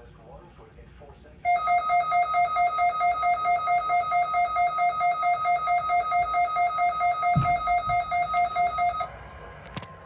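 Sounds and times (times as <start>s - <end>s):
pulsing electronic alert tone: 1.5s - 9.1s
low thud: 7.2s - 8.4s.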